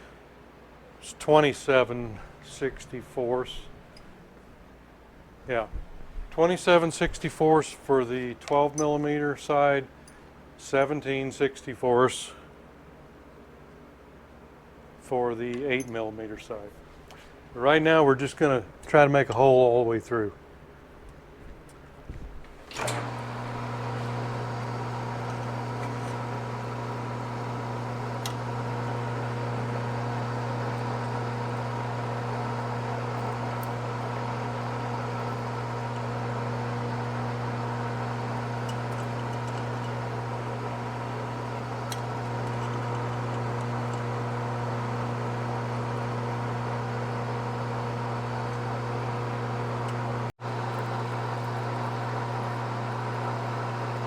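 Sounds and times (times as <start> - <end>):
electric drill motor running: 22.8 - 54.0.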